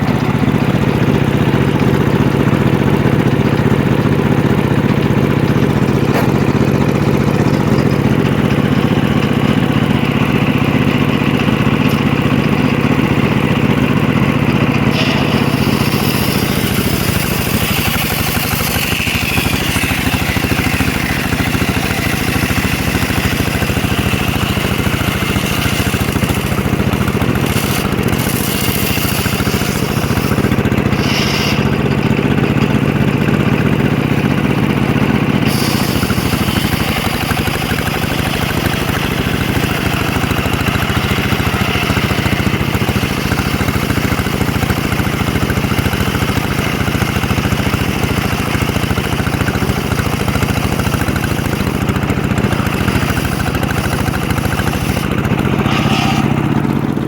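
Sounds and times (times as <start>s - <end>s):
sawmill engine running: 0.0s - 57.0s
saw blade hissing through log: 14.9s - 32.0s, 35.4s - 42.3s, 48.2s - 56.8s.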